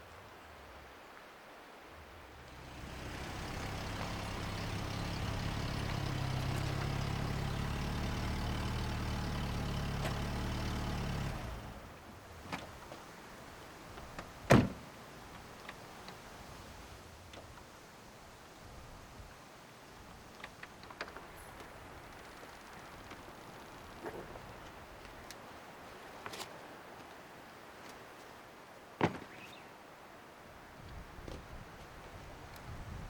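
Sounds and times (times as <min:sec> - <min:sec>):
car engine running: 0:02.5 - 0:11.9
loud thump: 0:29.0 - 0:29.4.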